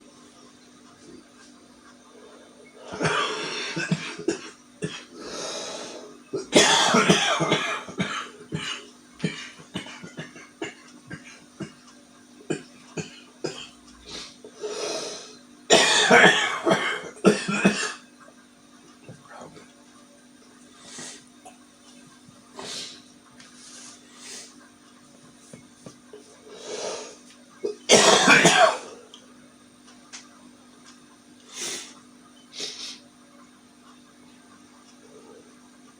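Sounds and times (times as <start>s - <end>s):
man coughing deeply: 6.4s - 11.8s, 15.7s - 18.0s, 27.7s - 29.0s.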